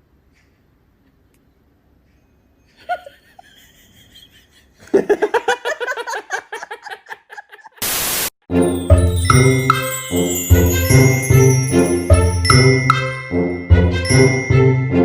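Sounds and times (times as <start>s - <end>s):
person laughing: 2.8s - 7.8s
loud static hiss: 7.8s - 8.3s.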